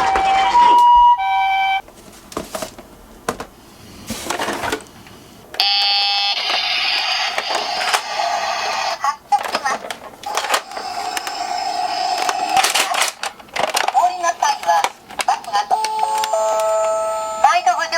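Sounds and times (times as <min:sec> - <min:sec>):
toy ambulance two-tone siren: 0:05.6 - 0:06.7, 0:15.7 - 0:17.6
buzzy electronic toy tone: 0:15.8 - 0:17.5.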